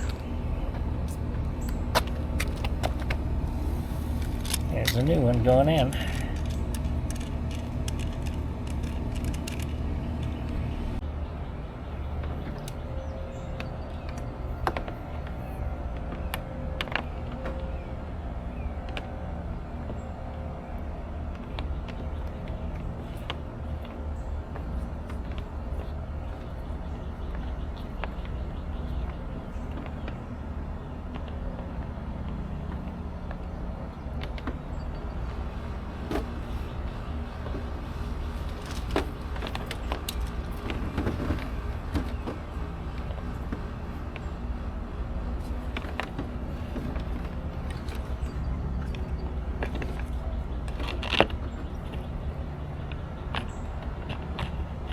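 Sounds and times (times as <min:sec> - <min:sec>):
steady low rumble: 0:00.0 - 0:54.9
hard parts clicking and knocking: 0:01.3 - 0:11.0.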